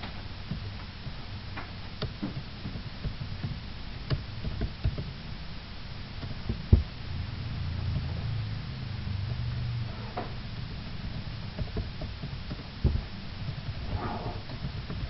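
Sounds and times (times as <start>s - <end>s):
sharp clicks and knocks: 0.0s - 5.2s, 6.2s - 7.0s, 10.1s - 15.0s
low hum: 0.0s - 15.0s.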